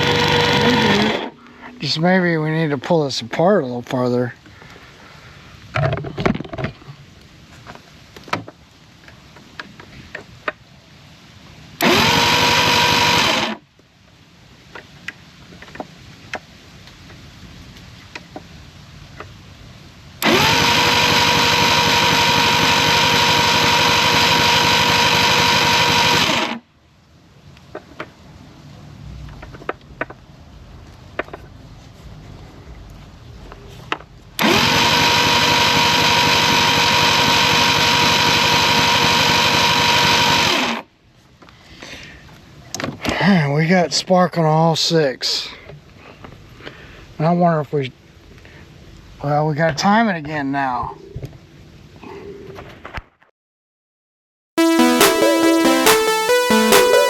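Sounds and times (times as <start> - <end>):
electric starter cranking engine: 0.0 - 2.0, 11.8 - 13.6, 20.2 - 26.6, 34.4 - 40.9.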